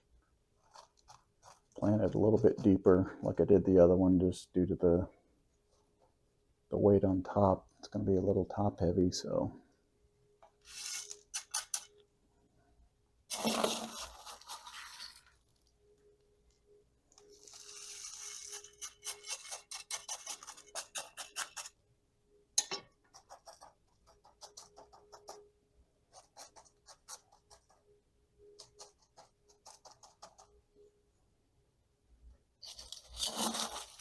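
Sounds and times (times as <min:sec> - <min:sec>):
faint steady hum: 0:00.0 - 0:19.4
gritty soil scratching and clicking: 0:32.6 - 0:34.0.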